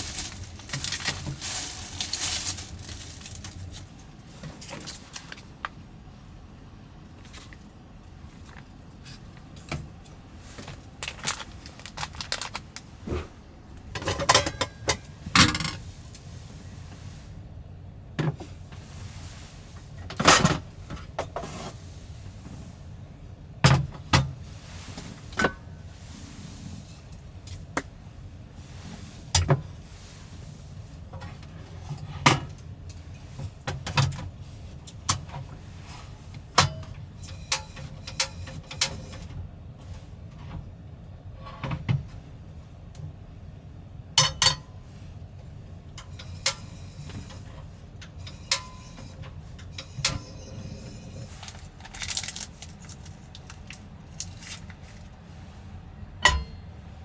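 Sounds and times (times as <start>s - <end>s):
low steady rumble: 0.0s - 57.0s.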